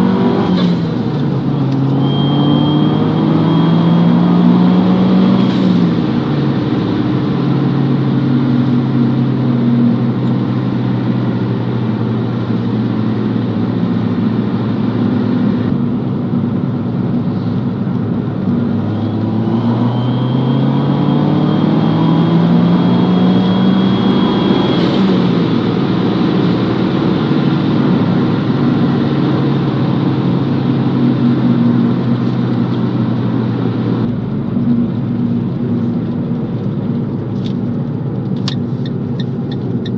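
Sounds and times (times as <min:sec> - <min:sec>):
car engine running: 0:00.0 - 0:39.9
high thin turbo whistle: 0:01.8 - 0:04.0, 0:18.9 - 0:22.0, 0:22.8 - 0:25.0.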